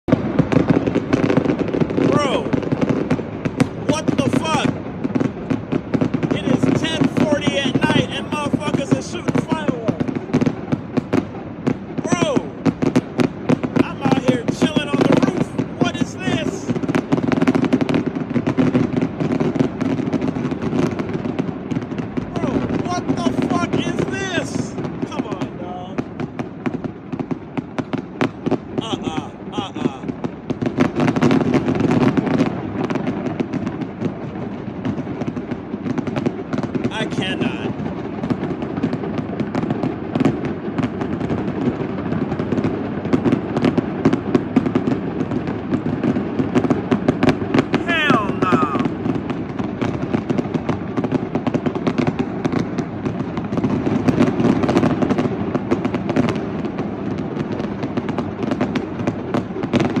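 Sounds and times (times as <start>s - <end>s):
fireworks pops and crackles: 0.0s - 60.0s
low rumble of fireworks bangs: 0.0s - 60.0s.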